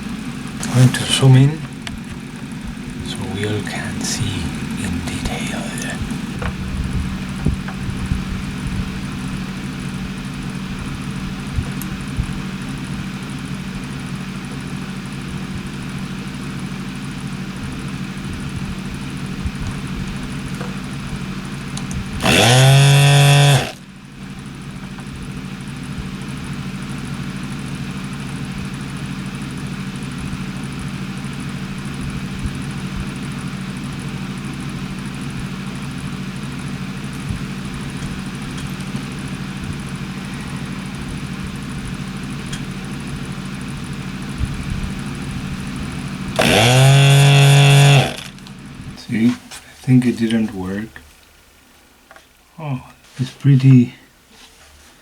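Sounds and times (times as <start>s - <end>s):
loud mechanical whirr: 0.0s - 9.4s, 21.8s - 23.8s, 44.4s - 48.5s
extractor fan humming: 0.0s - 55.0s.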